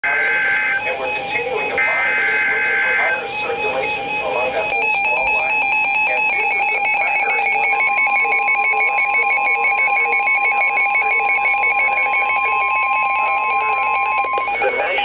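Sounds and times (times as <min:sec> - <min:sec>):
pulsing electronic ringing alarm: 0:00.0 - 0:15.0
steady alarm tone: 0:00.0 - 0:15.0.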